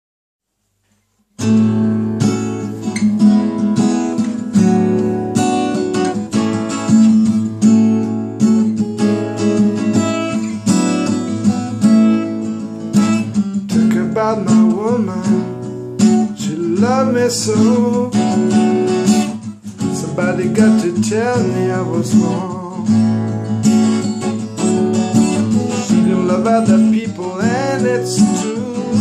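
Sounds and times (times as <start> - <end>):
acoustic guitar strumming: 1.3 - 29.0
person singing: 13.7 - 15.6, 16.3 - 18.5, 19.9 - 23.0, 25.7 - 29.0.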